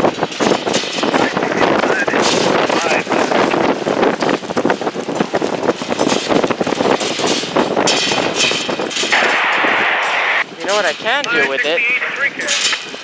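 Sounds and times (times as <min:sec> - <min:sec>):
gusty wind buffeting microphone: 0:00.0 - 0:13.0.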